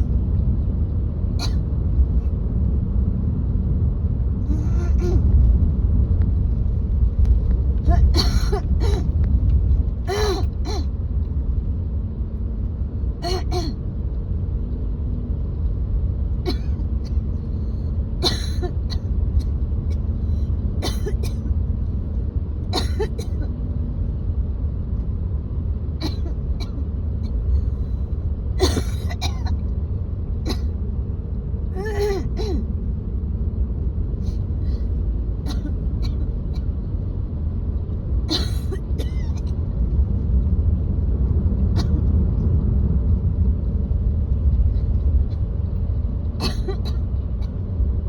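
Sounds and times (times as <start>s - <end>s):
car road rumble: 0.0s - 48.0s
woman coughing and clearing throat: 1.4s - 1.6s, 7.9s - 9.1s, 16.5s - 16.8s, 18.2s - 19.0s, 20.8s - 21.4s, 22.7s - 23.5s, 26.0s - 26.8s, 28.6s - 29.6s, 30.5s - 30.7s, 35.5s - 36.2s, 38.3s - 39.4s, 41.8s - 42.0s, 46.4s - 47.0s.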